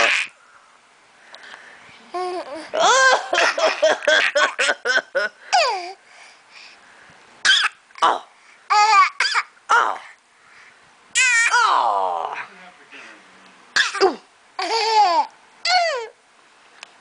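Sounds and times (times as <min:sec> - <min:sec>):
small child giggling: 0:02.1 - 0:05.9.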